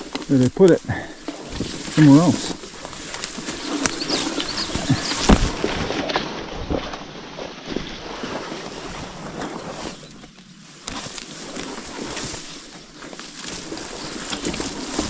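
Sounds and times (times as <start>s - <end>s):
leaves rustling underfoot: 0.0s - 15.0s
twigs crackling: 0.0s - 15.0s
twig snapping: 2.8s - 5.7s.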